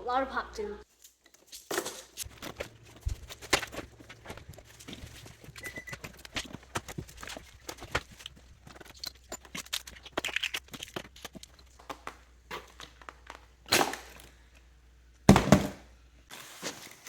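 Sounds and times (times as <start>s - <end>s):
plastic toys clattering: 1.5s - 13.4s.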